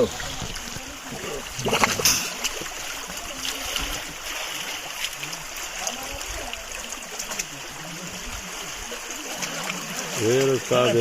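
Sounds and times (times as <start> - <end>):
stream water flowing: 0.0 - 11.0
water splash: 0.0 - 11.0.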